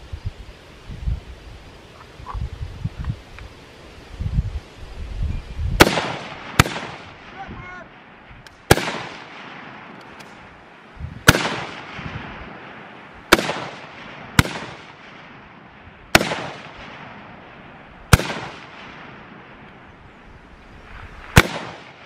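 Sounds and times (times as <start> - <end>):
rifle shots echoing: 5.8 - 19.7, 21.2 - 22.0.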